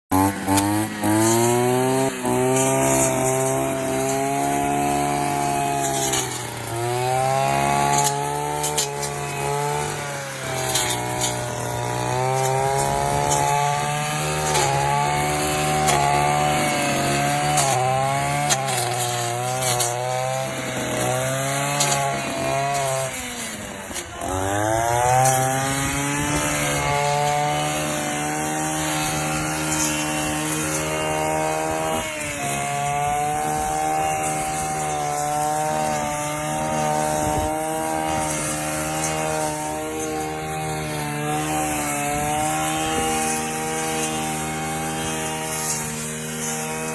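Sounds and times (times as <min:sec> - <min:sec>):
brush cutter engine at high revs: 0:00.0 - 0:46.9.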